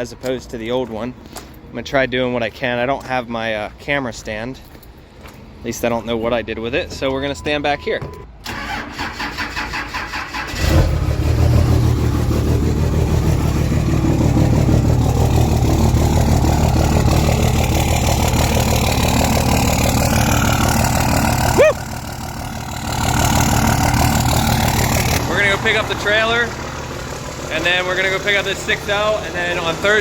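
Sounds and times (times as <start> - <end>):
diesel engine idling: 8.5 - 30.0.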